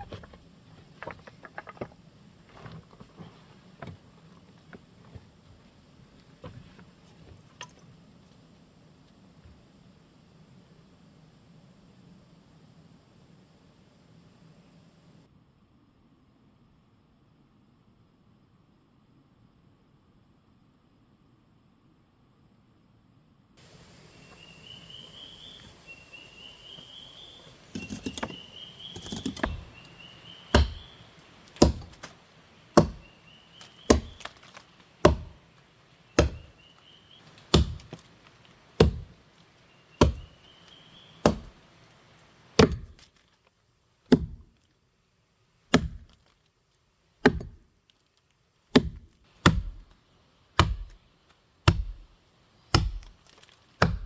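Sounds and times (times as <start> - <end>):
wood being chopped: 27.6 - 35.4, 36.2 - 39.2, 40.0 - 41.6, 42.6 - 43.1, 44.1 - 44.5, 45.7 - 46.2, 47.2 - 47.6, 48.7 - 49.9, 50.6 - 51.0, 51.7 - 52.1, 52.7 - 54.0.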